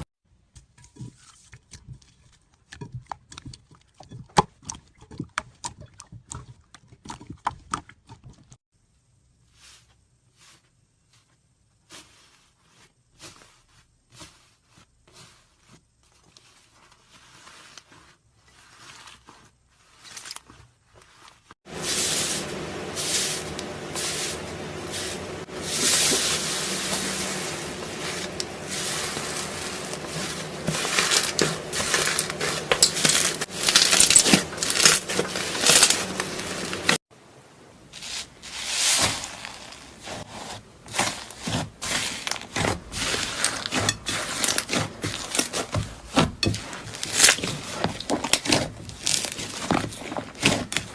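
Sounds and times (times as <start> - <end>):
slime squishing: 22.4 - 37.0.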